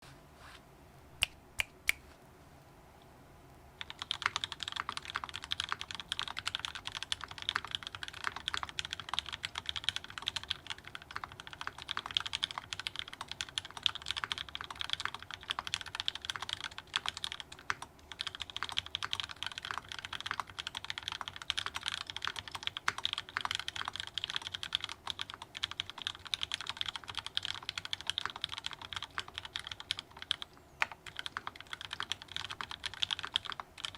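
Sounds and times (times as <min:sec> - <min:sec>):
mechanical keyboard typing: 0:03.8 - 0:33.9.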